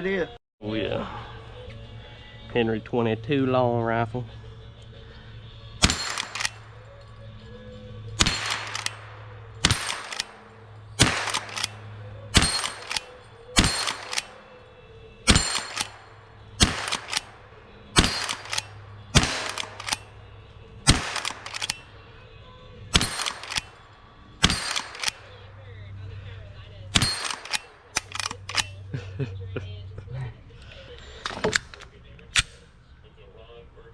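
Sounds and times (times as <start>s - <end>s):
rifle lever cycling: 5.8s - 6.8s, 8.2s - 14.6s, 15.3s - 20.2s, 20.9s - 21.9s, 22.9s - 23.8s, 24.4s - 25.4s, 27.0s - 28.8s, 31.2s - 32.6s
rifle shots: 5.8s - 6.8s, 8.1s - 14.6s, 15.2s - 20.2s, 20.8s - 22.1s, 22.9s - 25.5s, 26.9s - 28.8s.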